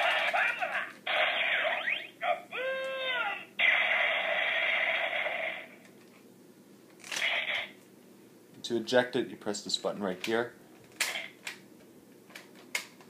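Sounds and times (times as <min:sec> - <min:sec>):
tinny electronic voice: 0:00.0 - 0:03.6
toy gun electronic sound effects: 0:00.0 - 0:05.8, 0:07.1 - 0:07.8, 0:11.0 - 0:11.4.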